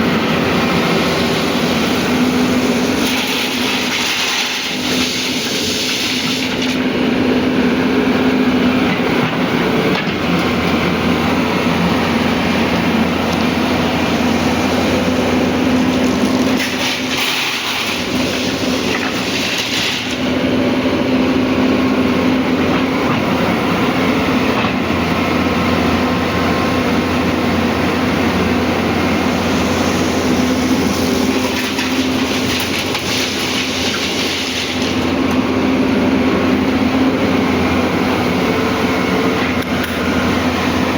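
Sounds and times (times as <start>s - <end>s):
excavator diesel engine: 0.0s - 40.9s.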